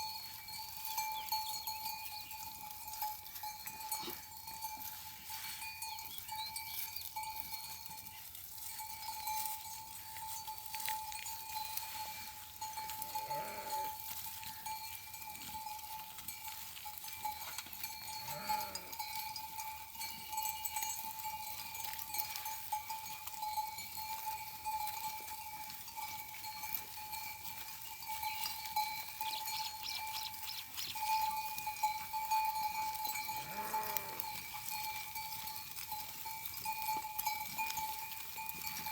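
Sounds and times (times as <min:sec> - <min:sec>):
livestock neck bells ringing: 0:00.0 - 0:38.9
animal bleating: 0:13.2 - 0:14.0, 0:18.2 - 0:19.1, 0:33.3 - 0:34.4.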